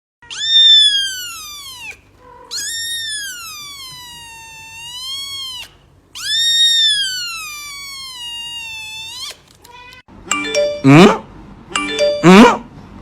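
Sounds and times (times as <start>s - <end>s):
cat meowing: 0.2s - 10.1s.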